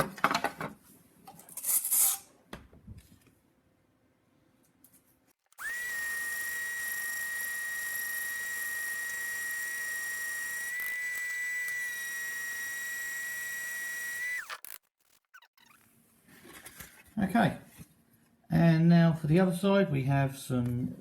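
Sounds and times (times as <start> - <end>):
electric sander motor whining: 5.6 - 14.8.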